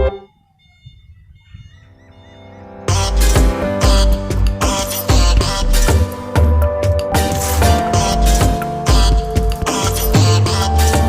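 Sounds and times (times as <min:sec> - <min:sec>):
music with heavy bass beat: 0:02.9 - 0:11.0.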